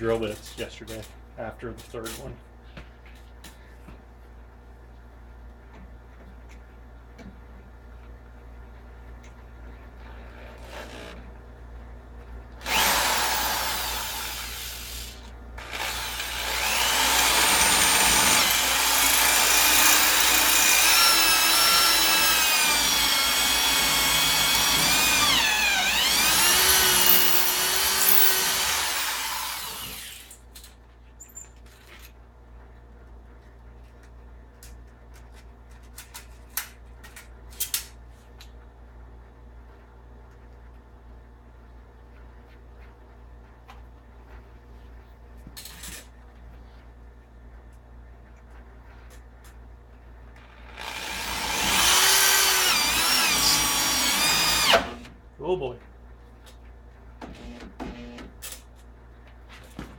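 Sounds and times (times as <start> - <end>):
electric drill boring into metal: 12.6 - 30.4, 50.6 - 55.1.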